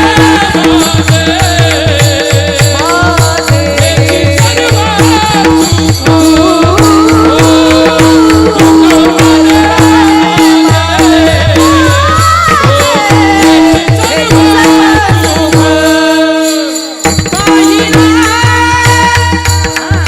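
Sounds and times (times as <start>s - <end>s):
low hand drum beating: 0.0s - 16.0s
jingling cymbals: 0.0s - 20.0s
person singing ornamented melody: 0.0s - 20.0s.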